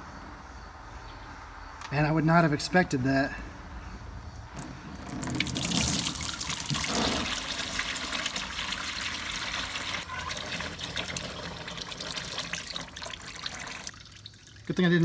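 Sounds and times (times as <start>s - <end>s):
water trickling into a pan: 5.0s - 15.0s.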